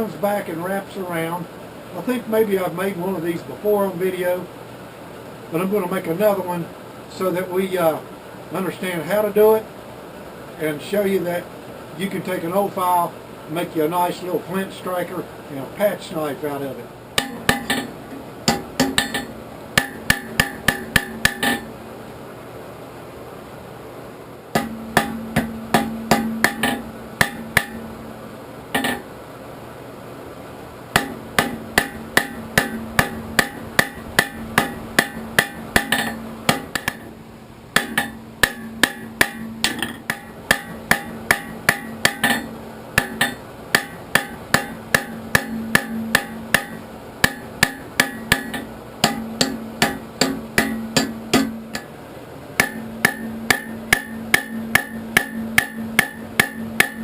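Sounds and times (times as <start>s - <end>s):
hammer striking steel on anvil: 17.2s - 21.7s, 24.6s - 27.9s, 28.8s - 29.1s, 31.0s - 37.2s, 37.8s - 51.9s, 52.6s - 57.0s.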